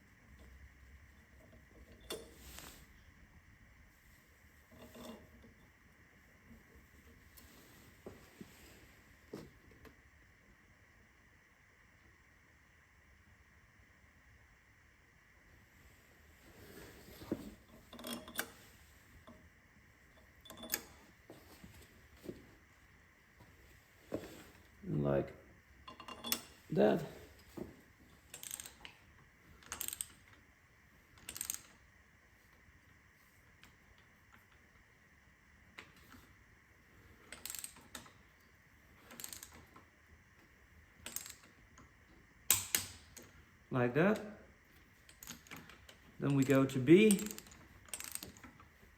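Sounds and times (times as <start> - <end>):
metallic clinks of tools: 25.9 - 26.6
ratchet wrench clicking: 28.3 - 29.0, 29.6 - 30.2, 31.2 - 31.8, 46.3 - 48.5.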